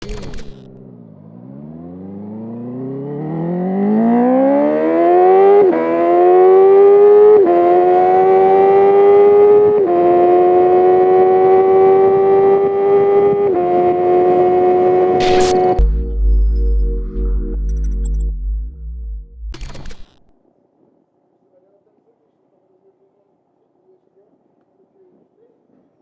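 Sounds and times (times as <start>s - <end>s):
motorcycle engine accelerating: 0.0s - 20.3s.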